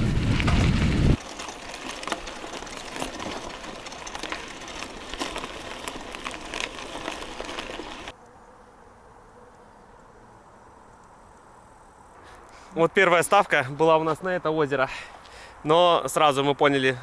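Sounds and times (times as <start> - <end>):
bicycle tyres on forest path: 0.0 - 8.2, 12.2 - 17.0
bike rattling: 0.0 - 8.2.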